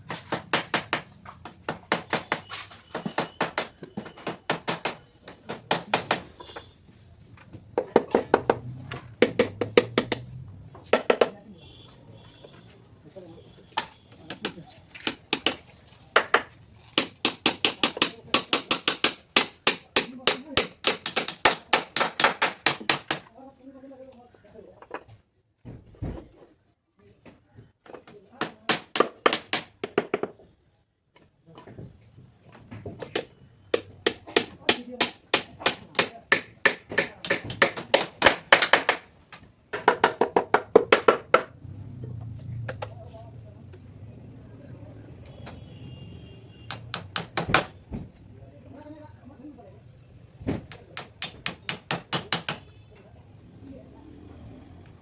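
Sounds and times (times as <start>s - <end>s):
hammer striking wood: 0.0s - 6.7s, 7.8s - 11.4s, 13.8s - 23.3s, 27.8s - 30.4s, 32.9s - 41.6s, 46.7s - 47.8s, 50.5s - 52.7s.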